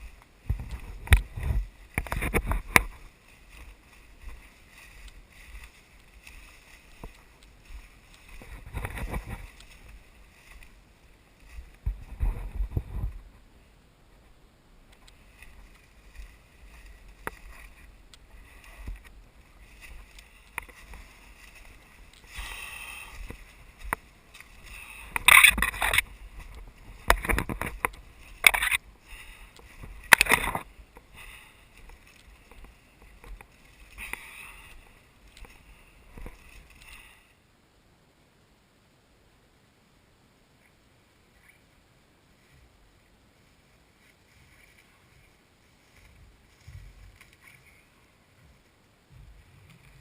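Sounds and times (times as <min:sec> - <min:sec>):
branches swishing against body: 0:00.0 - 0:13.4, 0:14.9 - 0:37.2
feet crunching leaf litter: 0:15.2 - 0:27.1.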